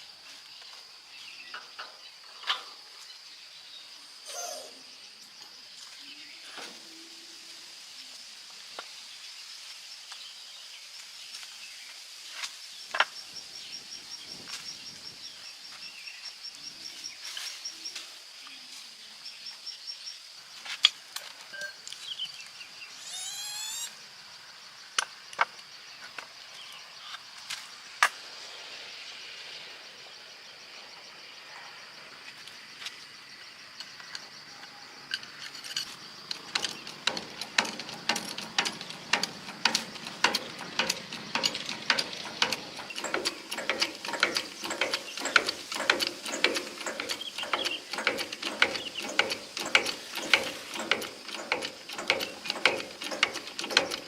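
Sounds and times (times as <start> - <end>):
high-pitched insect chirring: 22.9 - 24.2
warbling call: 23.0 - 24.0
sharp metallic clicks: 35.1 - 54.0.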